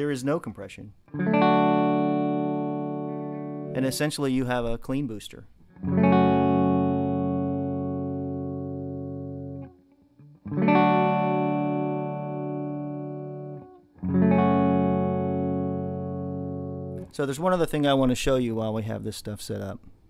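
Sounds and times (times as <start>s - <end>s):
electric guitar chords: 1.1s - 4.1s, 5.7s - 17.1s.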